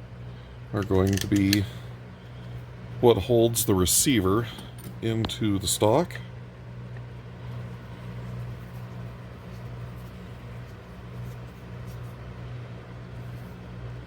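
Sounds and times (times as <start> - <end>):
low workshop hum: 0.0 - 14.0
light clicks of parts: 0.8 - 1.8.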